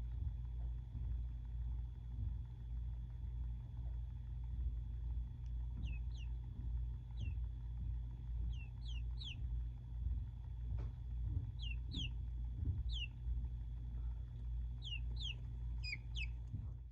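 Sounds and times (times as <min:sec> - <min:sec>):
low steady hum: 0:00.0 - 0:16.9
baby chicks peeping: 0:05.5 - 0:16.6.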